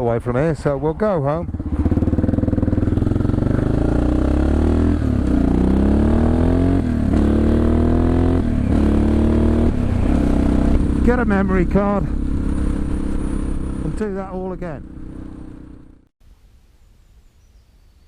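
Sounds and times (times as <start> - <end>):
motorcycle engine accelerating: 0.3 - 16.1.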